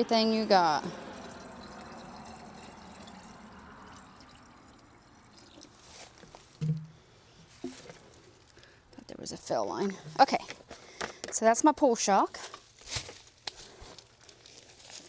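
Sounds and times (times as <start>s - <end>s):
liquid pouring and trickling: 0.0s - 8.6s.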